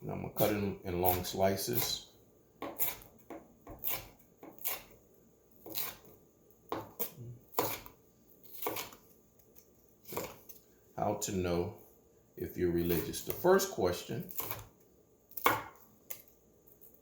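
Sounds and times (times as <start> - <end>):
knife slicing pepper: 0.4 - 2.0, 2.6 - 5.0, 5.6 - 6.1, 6.7 - 9.1, 10.0 - 10.5, 12.8 - 16.3.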